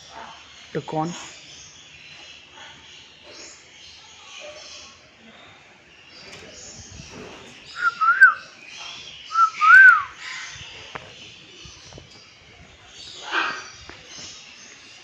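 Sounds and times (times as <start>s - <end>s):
bird chatter: 0.0s - 15.0s
loud whistled calls: 7.7s - 8.6s, 9.3s - 10.3s.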